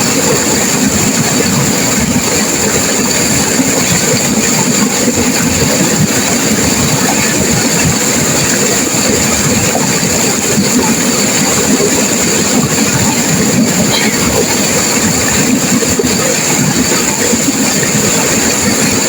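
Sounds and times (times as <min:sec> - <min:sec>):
river rushing over rapids: 0:00.0 - 0:19.0.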